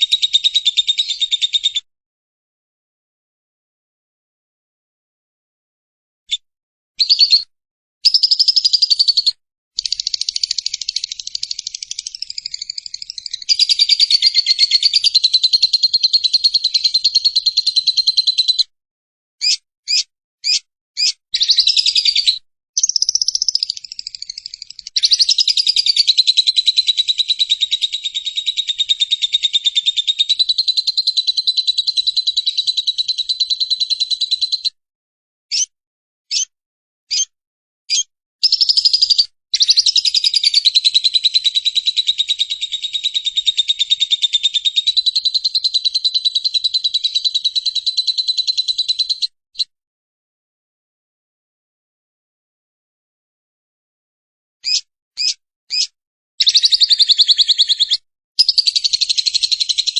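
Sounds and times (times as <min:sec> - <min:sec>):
lovebird chattering trill: 0:08.1 - 0:18.6, 0:19.4 - 0:34.8, 0:35.5 - 0:35.7, 0:36.3 - 0:36.5, 0:37.1 - 0:37.3, 0:37.9 - 0:49.3, 0:54.6 - 0:59.9.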